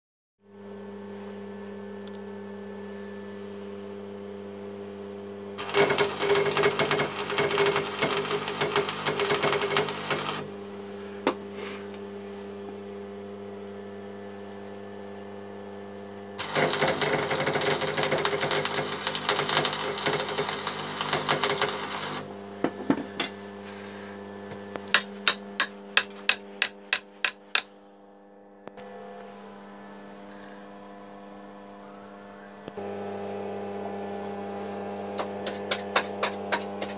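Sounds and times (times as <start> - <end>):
welder electrical hum: 0.4 - 36.9
arc welding crackling: 5.6 - 10.6, 16.4 - 22.4.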